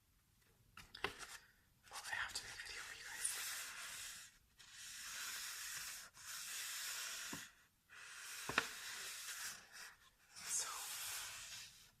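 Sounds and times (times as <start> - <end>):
paper being rubbed: 3.2 - 11.9.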